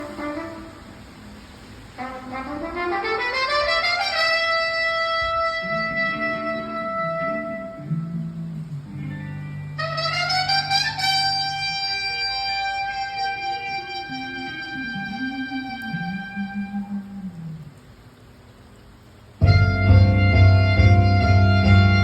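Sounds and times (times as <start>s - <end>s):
gliding pitched note: 19.4s - 22.0s
moving bass line: 19.4s - 22.0s.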